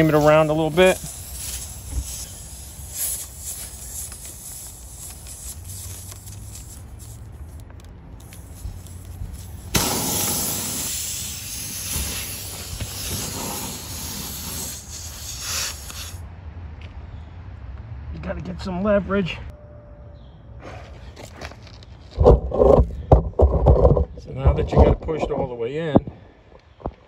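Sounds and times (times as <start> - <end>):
air hissing from tire: 0.0 - 7.6, 8.2 - 16.2.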